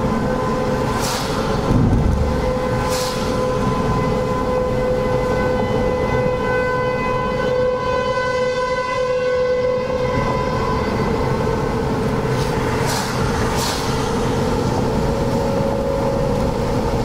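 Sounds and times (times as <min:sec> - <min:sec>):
warning siren steady tone: 0:00.0 - 0:12.2, 0:14.5 - 0:17.0.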